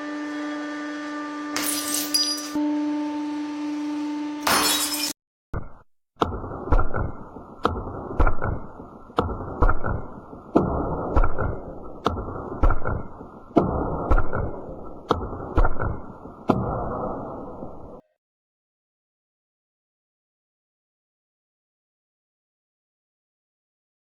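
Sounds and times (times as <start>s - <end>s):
sharp knocks with muffled rumble: 5.6s - 16.7s.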